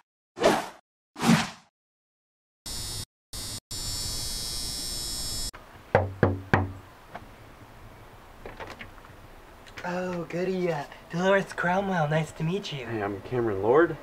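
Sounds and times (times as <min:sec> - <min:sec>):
short swish: 0:00.4 - 0:01.7
knocks on a door: 0:05.9 - 0:06.8.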